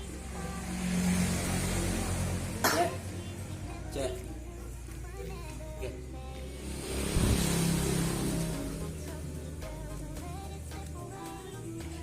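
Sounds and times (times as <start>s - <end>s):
motorcycle engine revving: 0.0s - 3.8s, 6.4s - 9.8s
background music: 0.0s - 12.0s.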